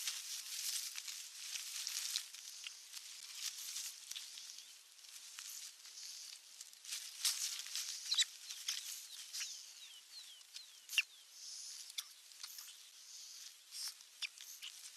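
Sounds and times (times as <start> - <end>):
high-pitched bird chirps: 8.0 - 12.8
sharp clicks and squeaks: 8.1 - 9.6.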